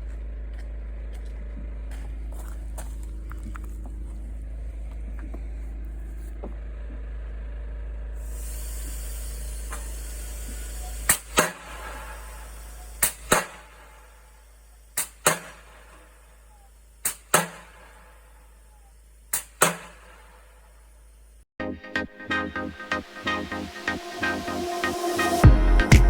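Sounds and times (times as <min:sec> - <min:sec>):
compressed air hiss: 0:08.2 - 0:15.9
pile-driving hammer blows: 0:09.7 - 0:14.4, 0:15.0 - 0:18.5, 0:19.3 - 0:20.6.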